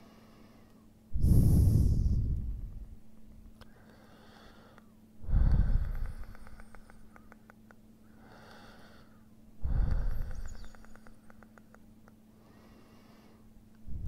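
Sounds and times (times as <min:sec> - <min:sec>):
person breathing: 0:00.0 - 0:03.0, 0:03.6 - 0:07.3, 0:08.0 - 0:11.3, 0:12.3 - 0:14.0
faint steady hum: 0:00.0 - 0:14.0
clicking noises in the throat: 0:03.6 - 0:04.0, 0:04.7 - 0:07.8, 0:08.4 - 0:08.7, 0:09.7 - 0:12.2.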